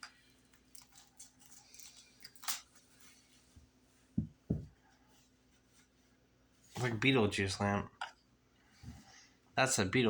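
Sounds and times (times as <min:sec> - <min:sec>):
packaging crackling and rustling: 0:00.4 - 0:03.2.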